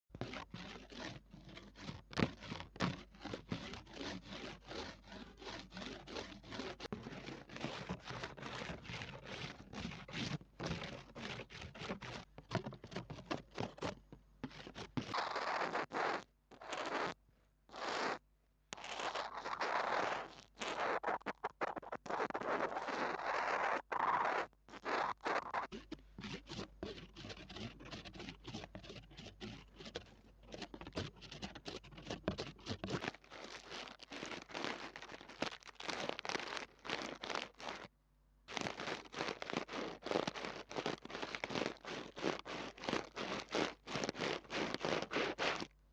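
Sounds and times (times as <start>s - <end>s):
fingertip scratching on microphone: 0.1s - 37.9s, 38.5s - 45.7s
rubbing swishes: 38.5s - 45.7s.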